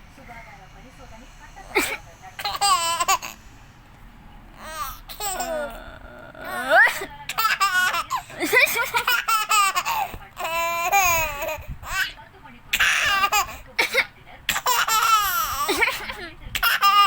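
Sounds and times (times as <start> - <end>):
baby giggling: 1.7 - 3.5, 4.6 - 12.2, 12.8 - 17.0.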